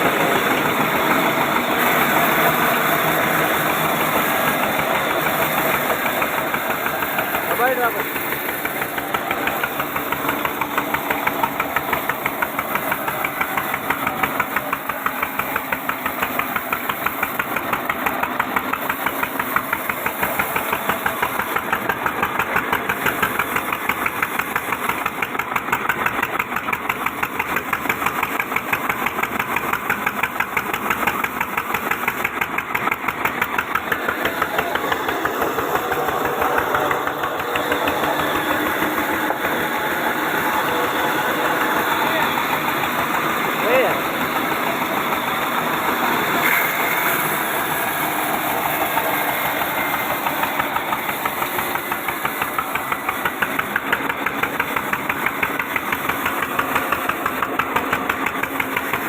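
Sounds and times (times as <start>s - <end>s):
sawmill machinery knocking: 0.0s - 59.0s.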